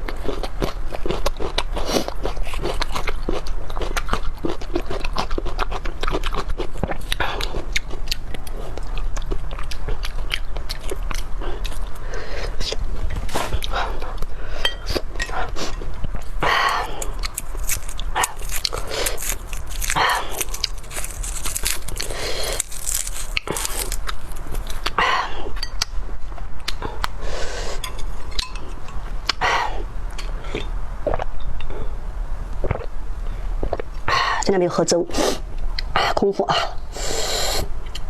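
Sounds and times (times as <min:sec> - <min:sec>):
person chewing and biting: 0:00.0 - 0:26.0
rushing mouth noise: 0:35.1 - 0:37.8.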